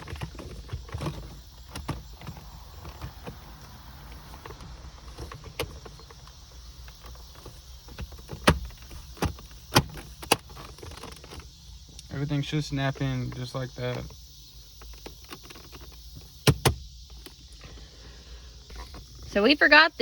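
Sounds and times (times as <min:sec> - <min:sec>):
plastic trim clicks and knocks: 0:14.8 - 0:16.8.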